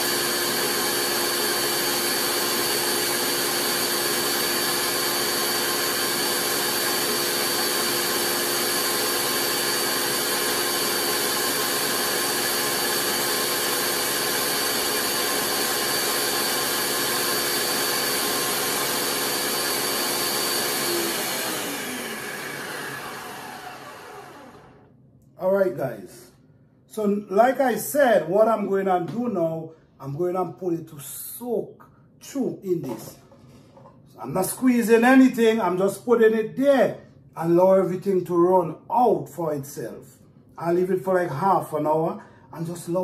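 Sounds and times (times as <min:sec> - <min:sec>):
blender motor running: 0:00.0 - 0:24.9.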